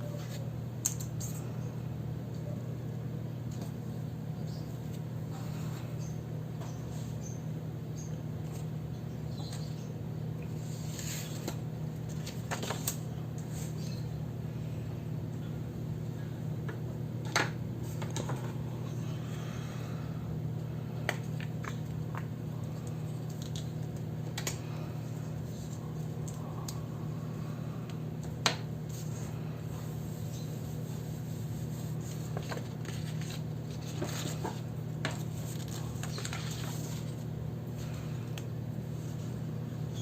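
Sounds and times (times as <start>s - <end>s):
steady low hum: 0.0s - 40.0s
pens and paper clicking: 21.1s - 24.6s
soft paper rustling: 28.9s - 38.0s.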